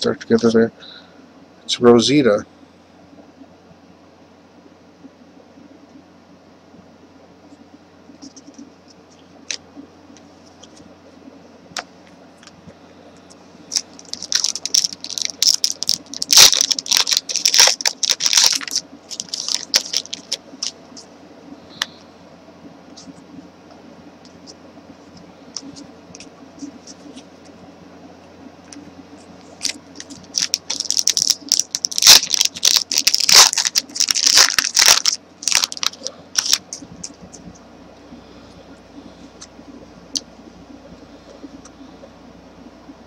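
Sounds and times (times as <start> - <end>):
cards and wrapper crinkling clicking: 13.7 - 20.8, 29.6 - 37.5.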